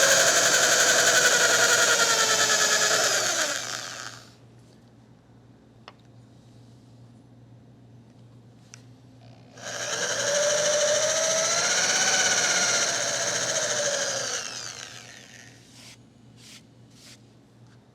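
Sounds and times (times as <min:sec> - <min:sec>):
electric drill boring into wood: 0:00.0 - 0:04.3, 0:09.6 - 0:15.6.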